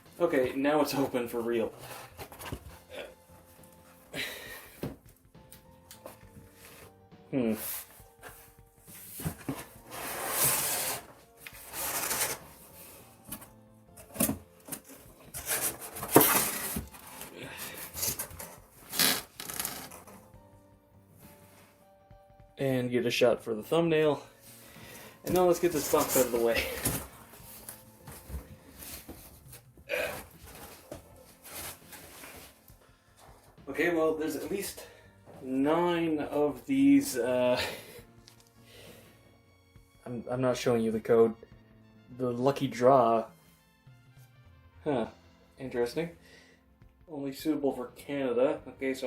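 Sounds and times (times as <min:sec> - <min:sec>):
cardboard rustling and scraping: 0:00.4 - 0:02.9, 0:07.5 - 0:20.2, 0:25.3 - 0:32.7.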